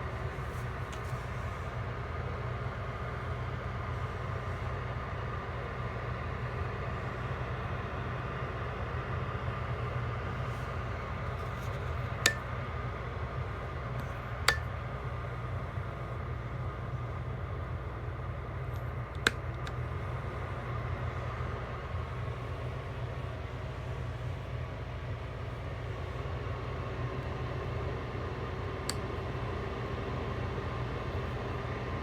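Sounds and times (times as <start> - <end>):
heater fan blowing: 0.0 - 32.0.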